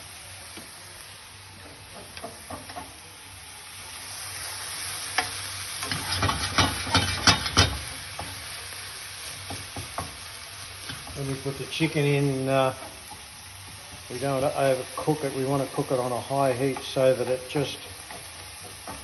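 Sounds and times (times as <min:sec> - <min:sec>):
food sizzling in oil: 0:00.0 - 0:19.0
utensil scraping a pan: 0:05.2 - 0:07.9.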